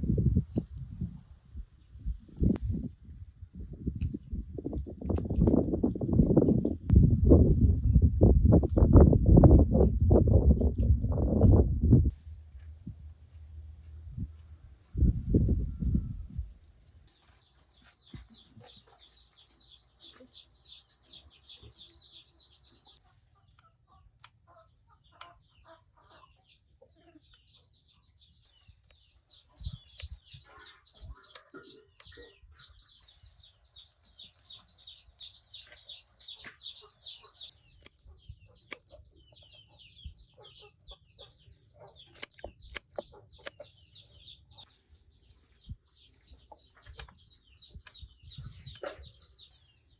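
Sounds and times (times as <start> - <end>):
sharp clicks: 10.6 - 11.0, 29.8 - 30.4, 31.1 - 32.2, 42.1 - 43.7, 46.8 - 49.0
birds chirping: 17.1 - 49.9.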